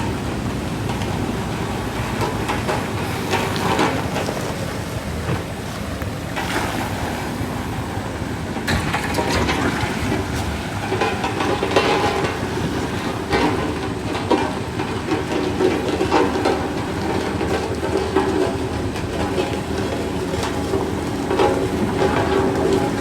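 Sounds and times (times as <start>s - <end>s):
diesel engine rumbling and clattering: 0.0s - 23.0s.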